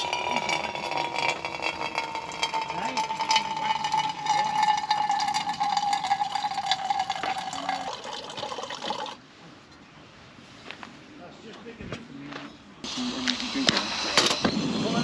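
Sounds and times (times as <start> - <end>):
water pouring: 0.0 - 9.2.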